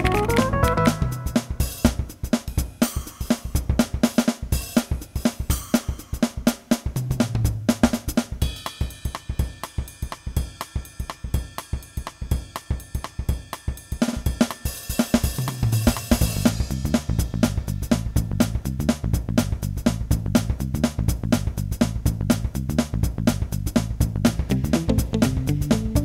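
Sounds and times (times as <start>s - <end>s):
held chords: 0.0s - 1.7s
fast drum-kit beat: 0.0s - 26.0s.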